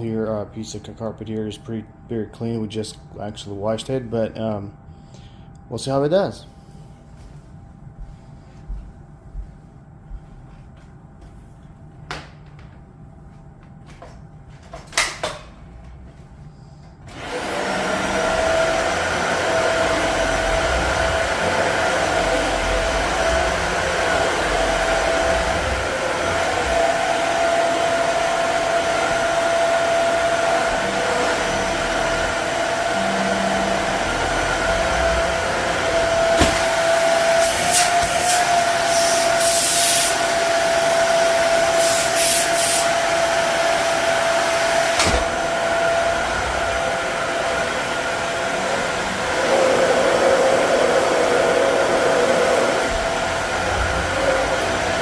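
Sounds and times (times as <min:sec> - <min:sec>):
vacuum cleaner running on carpet: 0:17.1 - 0:55.0
loud hiss: 0:36.4 - 0:40.3, 0:41.7 - 0:43.0.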